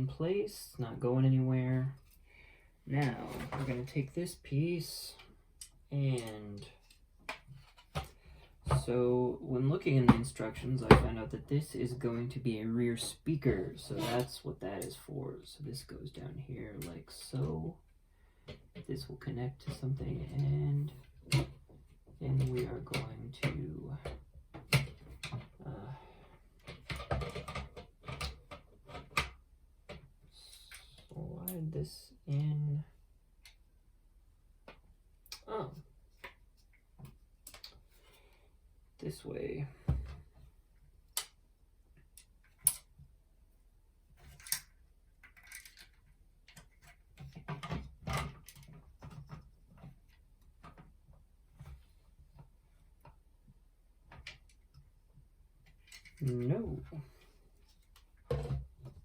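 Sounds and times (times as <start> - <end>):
plastic parts rattling and scraping: 2.9 - 4.2, 6.2 - 8.9, 26.2 - 31.2, 44.1 - 51.0, 55.6 - 59.0
plastic parts clicking and knocking: 21.0 - 25.6, 26.3 - 31.1, 44.2 - 51.8, 55.6 - 59.0.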